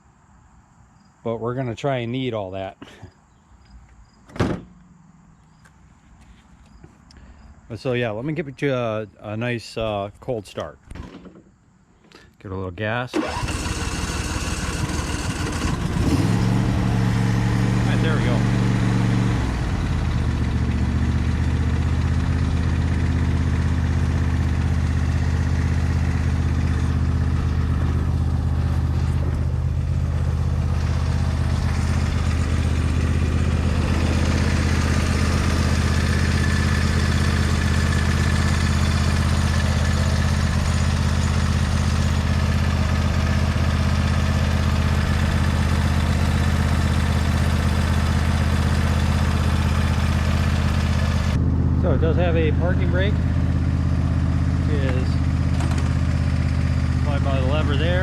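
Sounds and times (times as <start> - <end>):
lawn tractor engine idling: 13.1 - 58.0.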